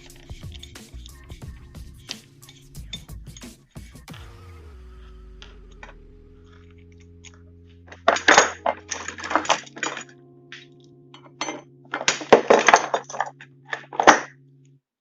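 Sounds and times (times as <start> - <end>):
steady low hum: 0.0 - 14.7
metal tools clinking: 2.0 - 3.5, 7.9 - 10.1, 11.2 - 14.3.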